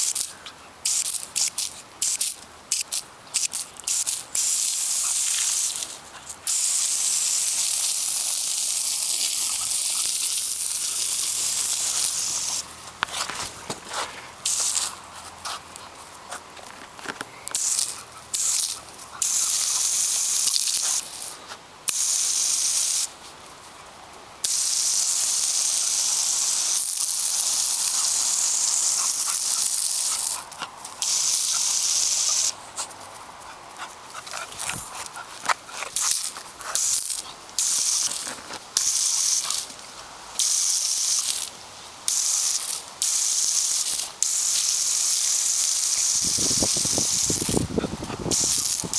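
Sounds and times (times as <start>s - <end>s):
hissing spray: 0.8s - 15.0s, 17.5s - 23.1s, 24.4s - 30.4s, 31.0s - 32.6s, 42.1s - 48.9s.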